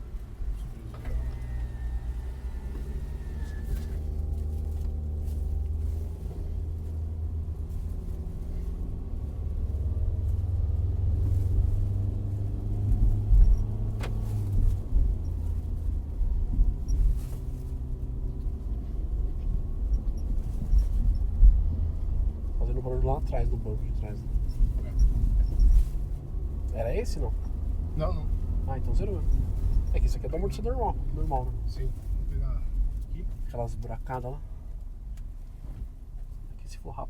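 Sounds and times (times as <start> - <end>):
car engine and road rumble: 0.0 - 37.0.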